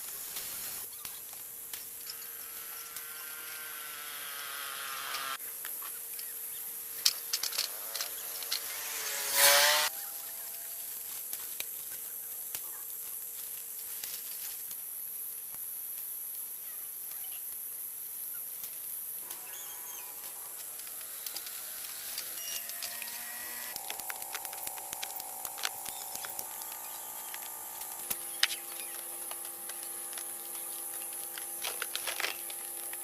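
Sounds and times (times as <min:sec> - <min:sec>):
high-pitched insect drone: 0:02.0 - 0:05.4, 0:19.2 - 0:33.0.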